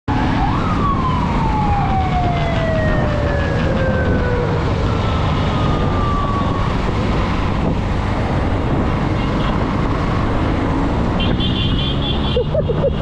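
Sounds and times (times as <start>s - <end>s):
fake police siren wail: 0.2s - 7.2s.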